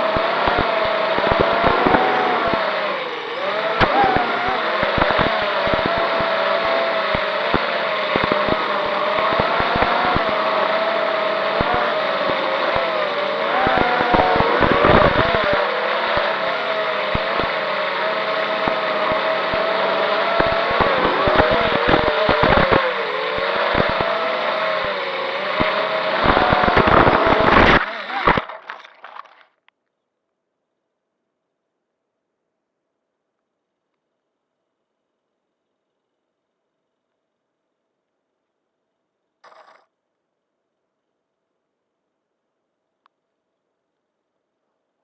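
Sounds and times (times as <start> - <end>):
crackling clicks: 0.0 - 2.8, 3.8 - 16.4, 17.0 - 17.6, 18.5 - 30.4
drone motors whining: 0.0 - 29.3.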